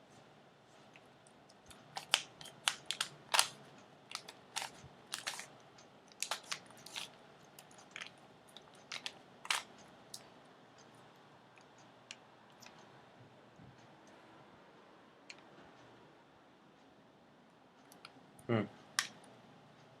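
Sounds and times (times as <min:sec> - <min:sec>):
plastic puzzle cube clacking: 0:01.9 - 0:03.5, 0:04.1 - 0:05.5.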